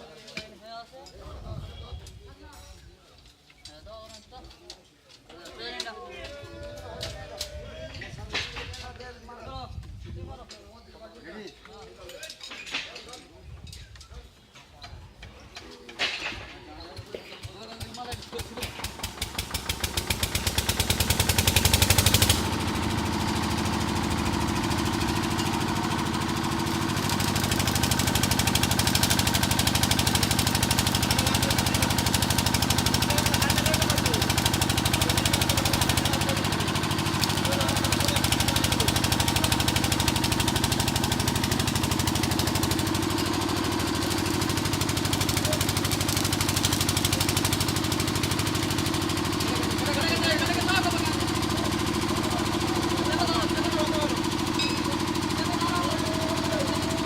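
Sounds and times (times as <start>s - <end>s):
stationary engine cranking and running: 17.8s - 57.0s.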